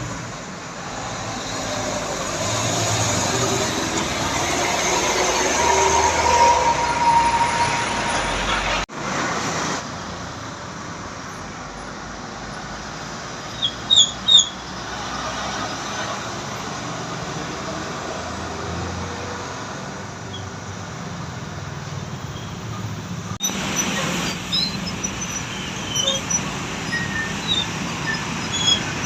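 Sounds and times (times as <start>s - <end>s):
road traffic: 0.0s - 29.0s
vehicle passing close: 0.8s - 9.8s.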